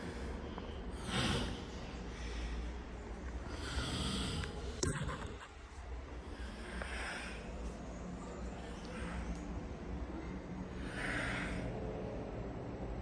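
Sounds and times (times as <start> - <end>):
man snoring: 1.0 - 1.7, 3.6 - 4.5.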